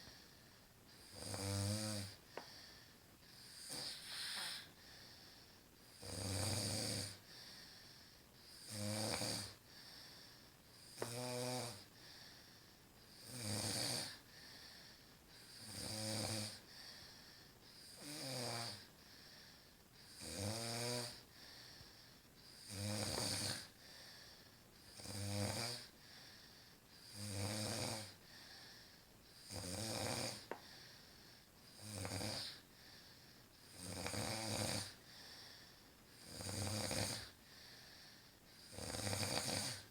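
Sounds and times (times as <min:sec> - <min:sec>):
deep rasping snoring: 0:01.0 - 0:02.2, 0:03.4 - 0:04.7, 0:06.0 - 0:07.2, 0:08.5 - 0:09.6, 0:10.9 - 0:11.8, 0:13.2 - 0:14.2, 0:15.5 - 0:16.6, 0:17.9 - 0:18.9, 0:20.1 - 0:21.2, 0:22.6 - 0:23.7, 0:25.0 - 0:25.9, 0:27.0 - 0:28.2, 0:29.4 - 0:30.4, 0:31.8 - 0:32.6, 0:33.7 - 0:35.0, 0:36.2 - 0:37.4, 0:38.6 - 0:39.9.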